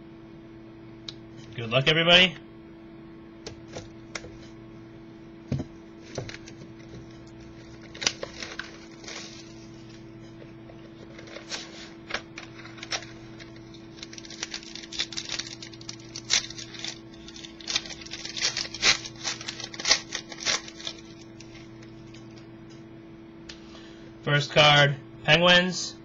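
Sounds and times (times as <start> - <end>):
steady low hum: 0.0 - 26.0
packaging crinkling: 6.0 - 10.1, 10.8 - 22.4.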